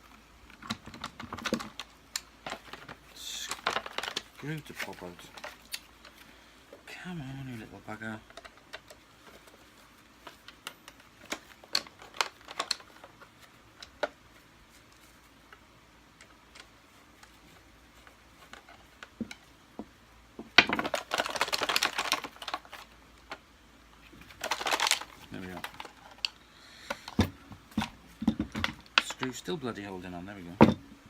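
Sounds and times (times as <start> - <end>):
parts rattling clatter: 0.4 - 15.3, 16.2 - 23.4, 24.0 - 31.0.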